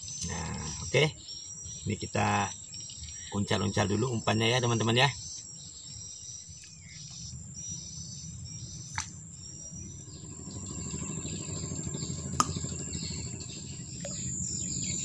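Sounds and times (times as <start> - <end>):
insects chirping and shrilling: 0.0 - 15.0
low rumble: 8.1 - 15.0.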